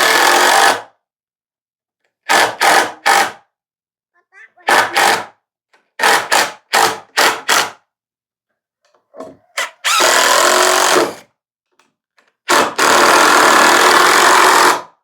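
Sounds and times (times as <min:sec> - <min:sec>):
power drill driving screws: 0:02.3 - 0:03.4, 0:04.7 - 0:05.3, 0:09.6 - 0:11.2, 0:12.5 - 0:14.9.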